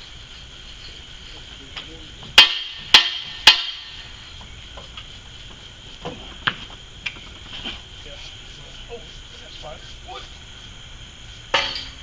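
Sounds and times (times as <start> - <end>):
insects buzzing: 0.0 - 12.0
loud metallic strikes ringing: 2.4 - 4.1.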